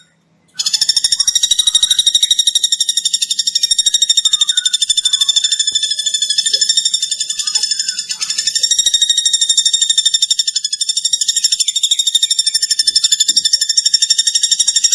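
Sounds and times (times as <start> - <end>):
woodpecker trilling: 0.6 - 14.9.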